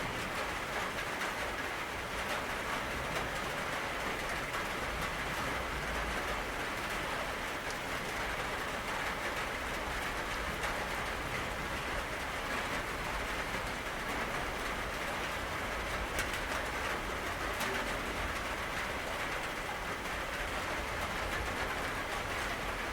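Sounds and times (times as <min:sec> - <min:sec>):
steady rain falling: 0:00.0 - 0:22.9.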